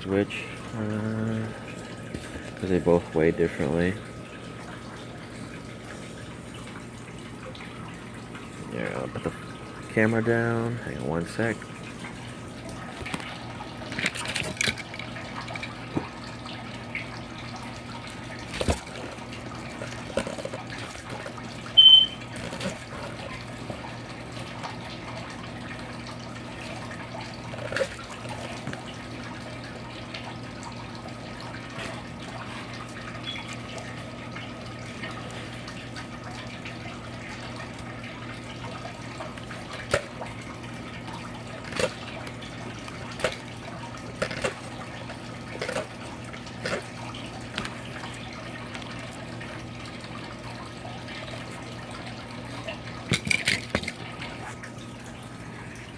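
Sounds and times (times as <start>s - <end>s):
short high electronic beep: 21.8s - 22.2s.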